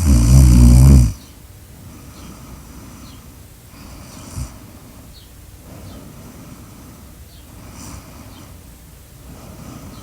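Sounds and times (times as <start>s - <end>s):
faint breathing: 0.0s - 1.2s, 1.8s - 10.0s
loud deep snore: 0.0s - 1.2s.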